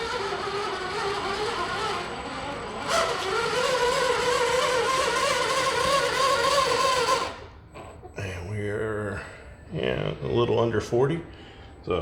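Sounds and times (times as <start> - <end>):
electric motor and gears whining: 0.0 - 7.5.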